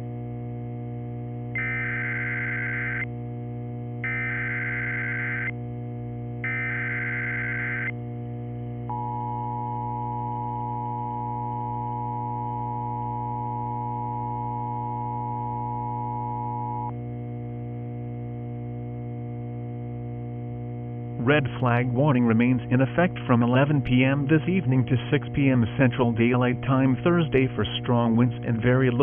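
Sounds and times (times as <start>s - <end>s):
steady low hum: 0.0s - 29.0s
two-tone attention signal: 1.6s - 3.0s, 4.1s - 5.5s, 6.5s - 7.9s
warbling data tones: 1.6s - 3.0s, 4.1s - 5.5s, 6.5s - 7.9s.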